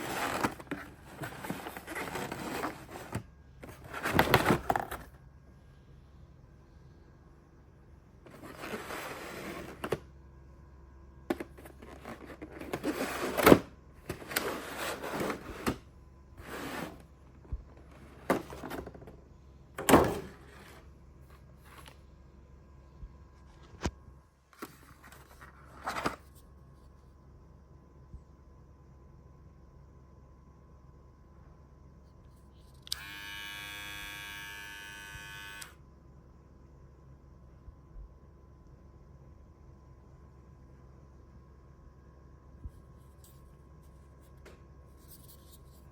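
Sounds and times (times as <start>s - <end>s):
packaging rustling and scraping: 0.0s - 5.1s, 8.3s - 10.0s, 11.3s - 17.1s, 17.7s - 19.2s.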